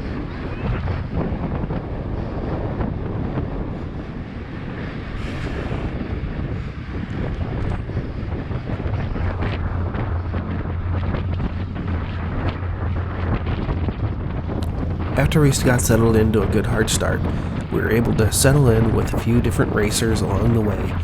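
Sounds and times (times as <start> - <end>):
wind buffeting microphone: 0.0 - 21.0
low rumble: 14.6 - 21.0.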